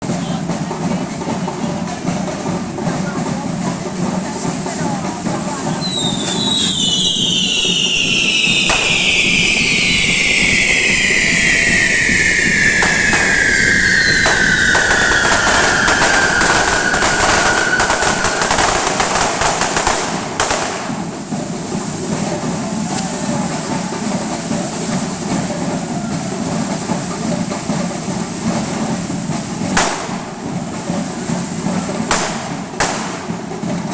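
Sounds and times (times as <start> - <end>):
firework crack: 0.1 - 33.9
firework whistle falling in pitch: 5.6 - 21.0, 22.8 - 31.0.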